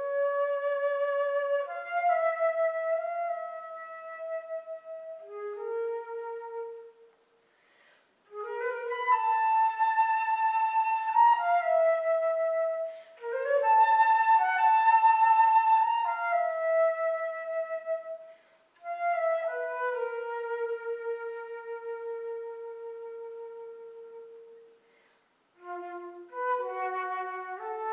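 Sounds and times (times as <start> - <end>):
solo flute: 0.0 - 7.4, 8.2 - 27.9
player breathing: 7.4 - 8.2.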